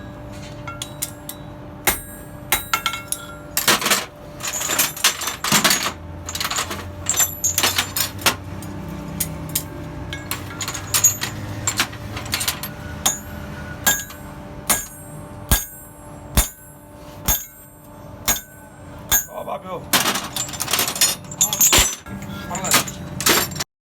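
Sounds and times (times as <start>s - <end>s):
hammer striking metal on anvil: 0.0s - 3.8s, 9.5s - 23.0s
low steady hum: 0.0s - 23.6s.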